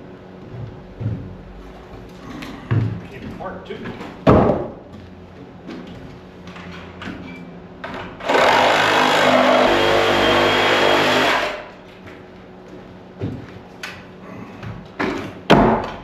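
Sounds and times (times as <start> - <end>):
reciprocating saw cutting wood: 8.2 - 11.7.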